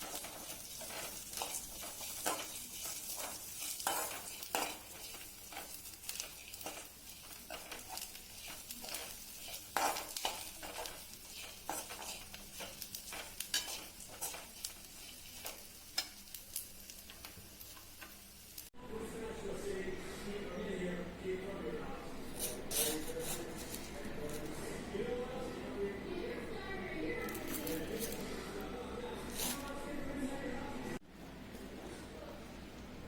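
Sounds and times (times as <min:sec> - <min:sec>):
spoon scraping a pan: 0:00.0 - 0:18.2, 0:22.1 - 0:24.6, 0:27.3 - 0:28.4, 0:29.2 - 0:29.8
food sizzling in oil: 0:00.0 - 0:18.8.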